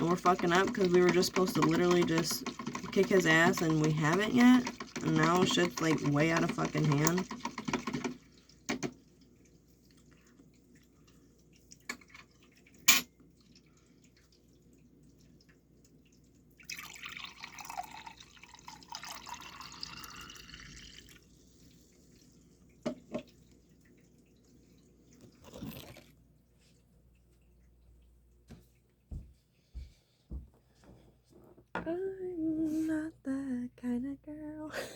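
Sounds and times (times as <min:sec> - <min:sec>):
liquid pouring: 0:00.0 - 0:26.4.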